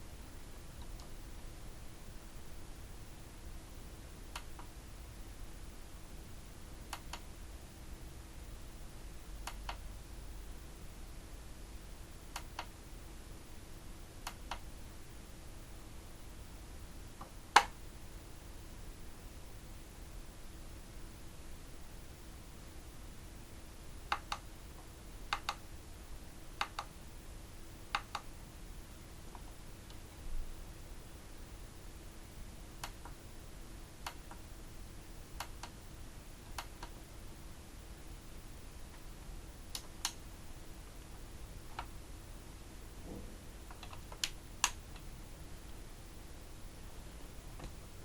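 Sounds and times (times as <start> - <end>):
small sharp clicks: 9.4 - 9.8, 12.3 - 12.8, 24.1 - 25.6, 26.6 - 26.9, 27.9 - 28.3, 35.4 - 35.8, 36.4 - 37.0, 39.7 - 40.2, 43.7 - 45.1
soft low knock: 43.0 - 43.4.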